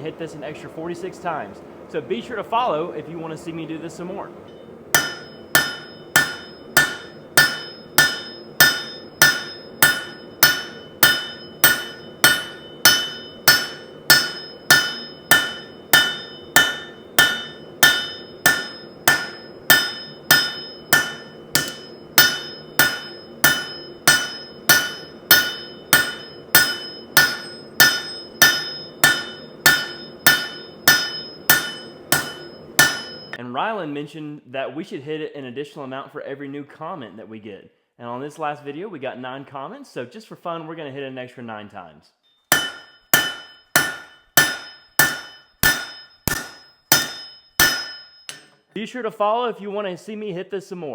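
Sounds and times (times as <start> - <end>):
hammer striking steel: 4.5 - 33.4, 42.5 - 48.6.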